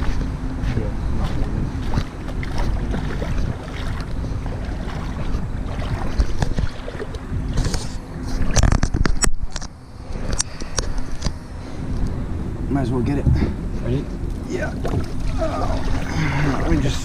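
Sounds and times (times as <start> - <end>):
electric trolling motor humming: 0.0 - 12.7
wind rumbling on microphone: 0.0 - 17.0.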